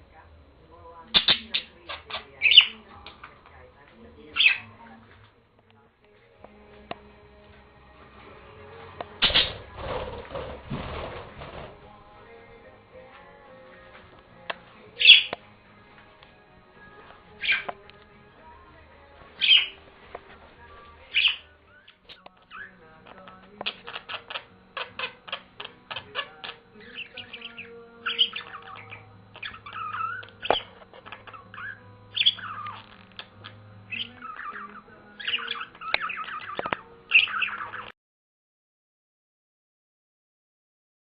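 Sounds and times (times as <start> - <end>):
budgerigars chirping and squawking: 1.1 - 2.9, 4.2 - 4.8, 9.2 - 11.7, 15.0 - 15.4, 16.8 - 17.8, 19.4 - 19.8, 21.0 - 37.9
clicky bird chatter: 28.3 - 31.5, 32.2 - 37.9.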